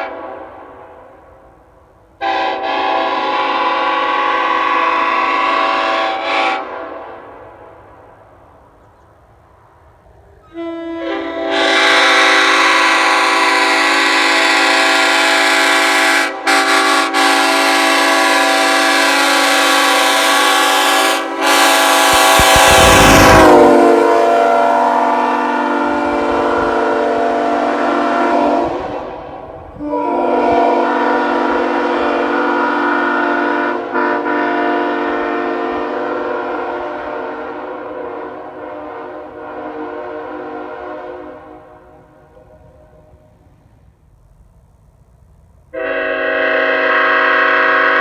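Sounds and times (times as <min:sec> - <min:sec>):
train horn chord blasts: 0:02.2 - 0:07.5, 0:10.4 - 0:43.1, 0:45.7 - 0:48.0
loud low rush: 0:20.2 - 0:35.8.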